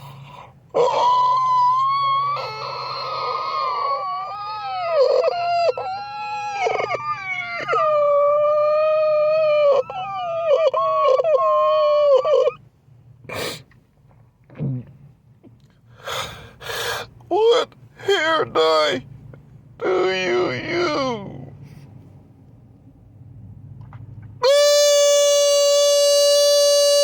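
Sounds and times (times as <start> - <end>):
high-pitched wailing howl: 0.8 - 12.6, 24.4 - 27.0.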